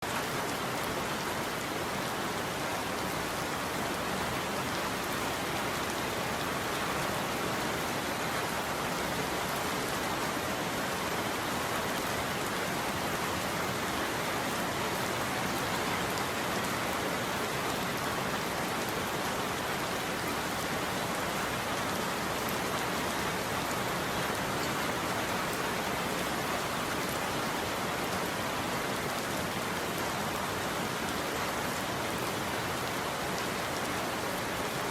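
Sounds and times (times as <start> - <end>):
steady rain falling: 0.0 - 34.9.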